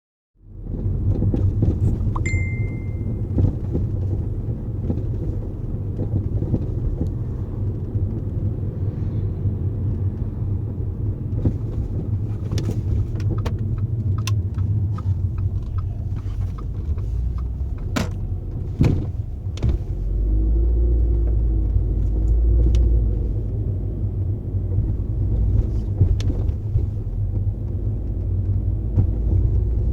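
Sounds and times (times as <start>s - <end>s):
car driving rumble: 0.4s - 29.9s
suspension clunking: 0.6s - 29.9s
short beep: 2.2s - 3.3s.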